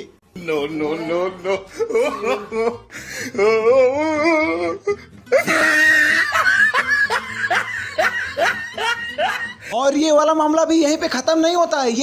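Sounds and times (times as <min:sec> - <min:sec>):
music: 0:00.0 - 0:12.0
laughter in short bursts: 0:05.3 - 0:09.6.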